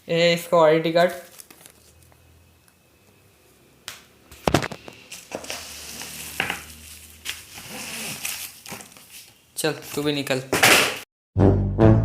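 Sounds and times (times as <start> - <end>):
plastic and cardboard crinkling: 1.0 - 2.1, 4.4 - 10.2.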